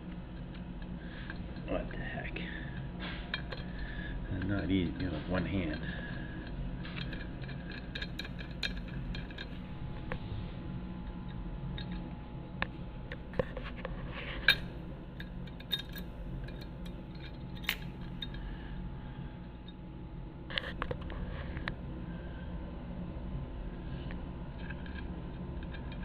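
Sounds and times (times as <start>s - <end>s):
steady low hum: 0.0s - 26.0s
metal spokes clinking: 6.8s - 9.9s, 14.4s - 18.6s.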